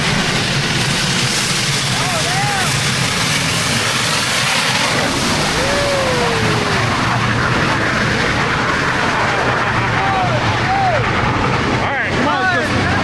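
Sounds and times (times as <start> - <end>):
steam train rumbling past: 0.0 - 11.7
falling whine: 2.3 - 10.2.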